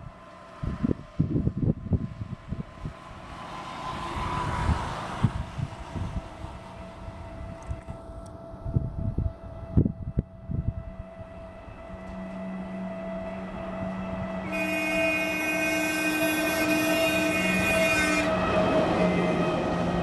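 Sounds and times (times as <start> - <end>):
vehicle traffic: 2.0 - 8.6, 11.2 - 20.0
loud multi-tone horn: 9.2 - 19.8.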